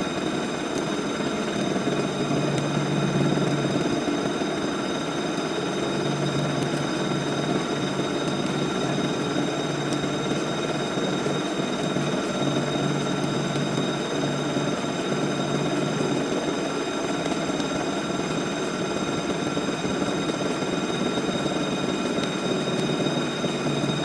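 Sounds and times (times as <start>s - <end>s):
high machine whine: 0.0s - 24.0s.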